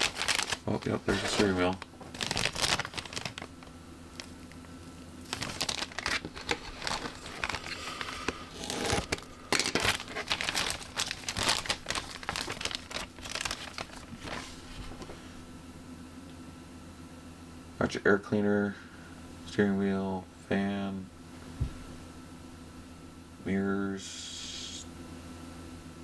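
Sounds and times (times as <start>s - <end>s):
plastic packaging crinkling: 0.0s - 15.1s.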